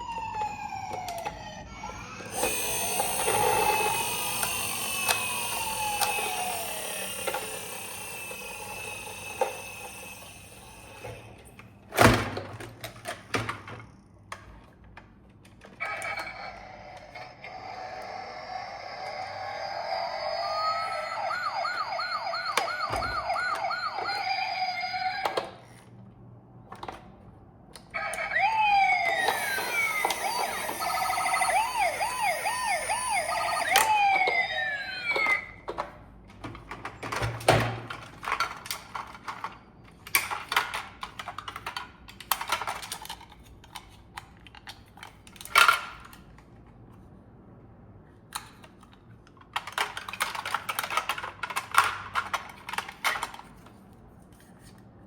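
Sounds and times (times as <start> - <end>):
electronic sirens wailing: 0.0 - 11.4, 15.8 - 25.4, 27.9 - 35.7.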